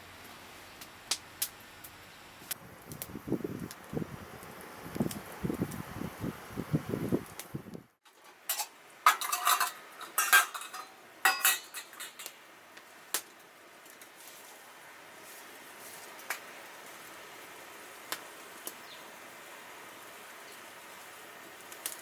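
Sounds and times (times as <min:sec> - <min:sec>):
metal cookware clinking: 0:08.5 - 0:12.3.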